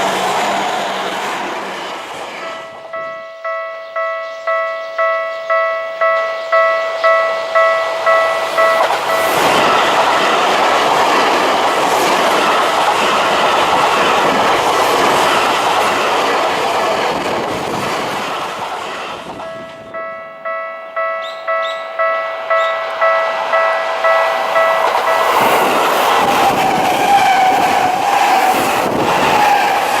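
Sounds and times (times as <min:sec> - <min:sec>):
train wheels rushing past: 0:00.0 - 0:03.0, 0:06.5 - 0:20.0, 0:21.2 - 0:30.0
level crossing warning bell: 0:02.4 - 0:10.7, 0:19.3 - 0:26.9.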